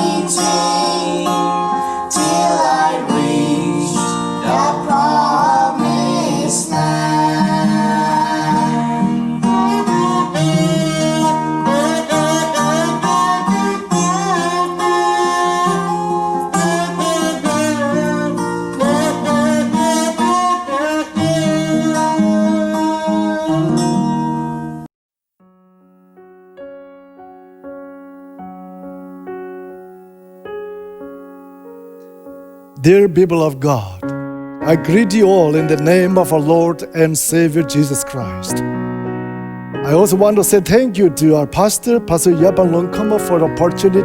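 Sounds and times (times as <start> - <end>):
person singing: 0.0 - 24.6, 32.8 - 38.7, 39.8 - 44.0
strummed acoustic guitar: 0.0 - 24.8, 32.8 - 44.0.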